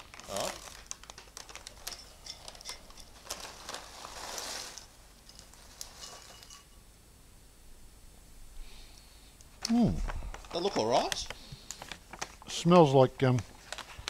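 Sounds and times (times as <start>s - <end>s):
snack bag crinkling: 0.0s - 6.5s, 9.6s - 12.7s, 13.3s - 14.0s.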